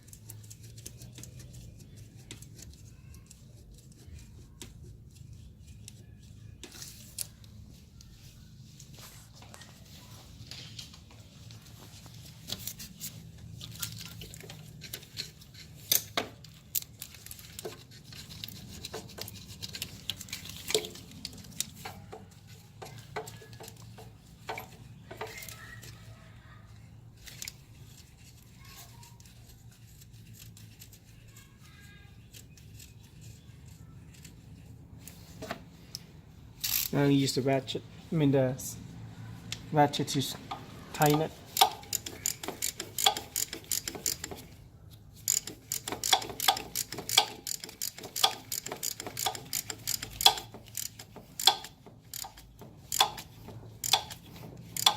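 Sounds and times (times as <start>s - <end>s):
metallic clicks of tools and bolts: 13.6s - 25.9s, 40.5s - 44.6s, 45.2s - 54.9s.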